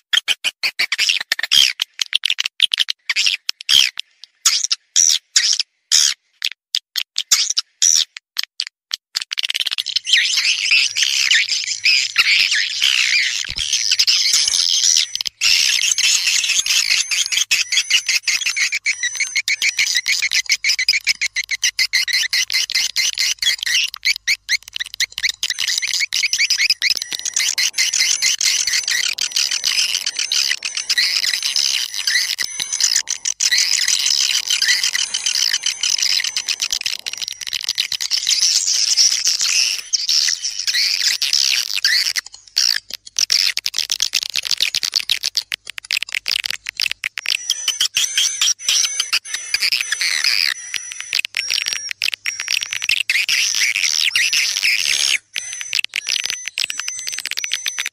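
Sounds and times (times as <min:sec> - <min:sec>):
birds twittering chirps: 0:10.0 - 0:43.5, 0:51.4 - 0:57.9
sharp clicks: 0:17.3 - 0:39.9, 0:40.7 - 0:57.9.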